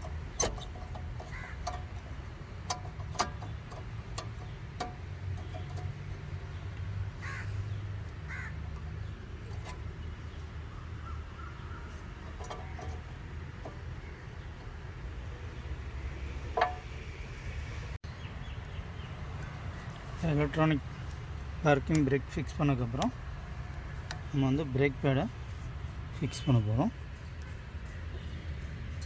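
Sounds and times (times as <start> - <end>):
bird calls: 6.5 - 15.8.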